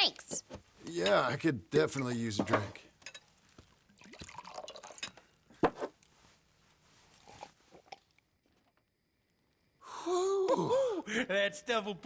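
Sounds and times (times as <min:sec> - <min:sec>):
drink pouring into a glass: 0:03.5 - 0:05.4.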